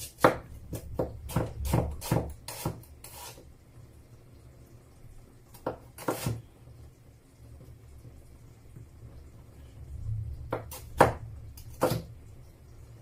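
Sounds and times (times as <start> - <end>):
knife chopping onion on board: 0.0 - 3.4, 5.5 - 6.4, 10.5 - 12.1.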